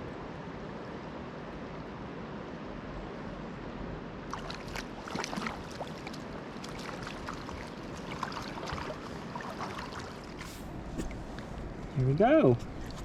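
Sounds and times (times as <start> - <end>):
river water trickling: 4.2 - 13.0
small water splashes: 4.3 - 13.0.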